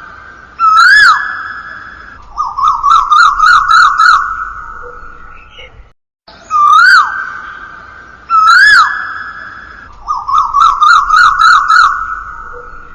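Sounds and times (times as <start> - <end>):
bird-call ringtone whistling: 0.7 - 5.7, 8.4 - 12.9.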